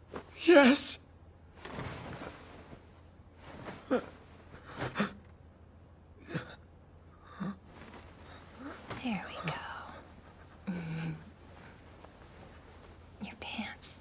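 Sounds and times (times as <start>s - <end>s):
people gasping and sighing: 10.6s - 11.8s.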